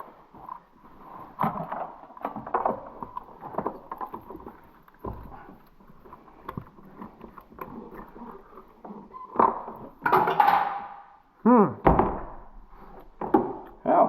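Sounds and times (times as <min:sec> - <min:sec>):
hand tools and metal parts clattering: 0:00.3 - 0:11.2.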